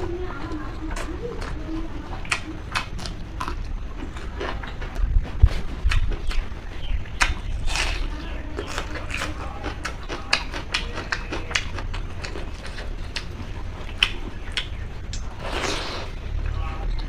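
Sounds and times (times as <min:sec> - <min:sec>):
low hum: 0:00.0 - 0:17.0
wet chewing and lip smacks: 0:02.2 - 0:15.4.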